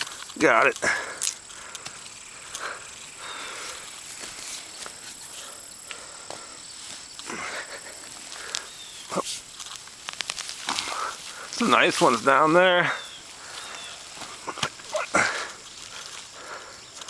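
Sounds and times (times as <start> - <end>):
earth scraping and crumbling: 6.3 - 17.0.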